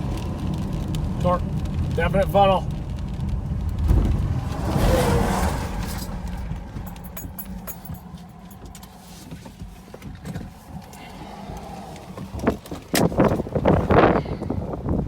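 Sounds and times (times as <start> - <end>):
low steady rumble: 0.0 - 14.1
wind buffeting microphone: 2.6 - 8.2, 10.0 - 15.0.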